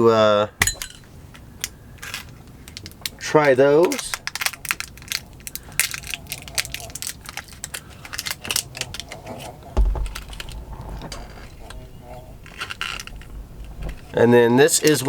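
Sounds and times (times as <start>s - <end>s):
glass bottles clinking: 0.6s - 1.1s
low rumble: 9.7s - 15.0s
heavy thump: 9.8s - 15.0s.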